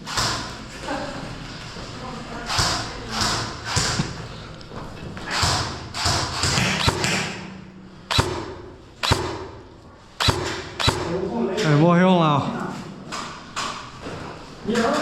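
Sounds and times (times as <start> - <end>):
airsoft rifle shots with echo: 5.3 - 11.4.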